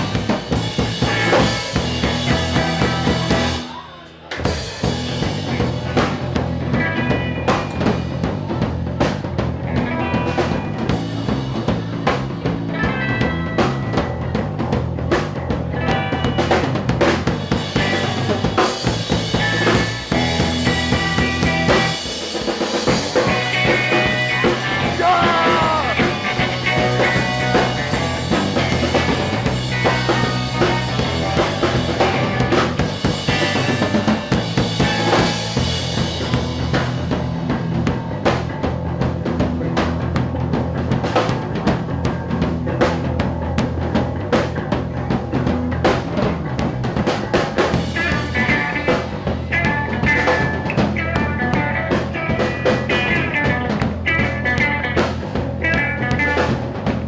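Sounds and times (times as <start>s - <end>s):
rock band playing: 0.0s - 57.0s
drum hits: 22.8s - 35.7s.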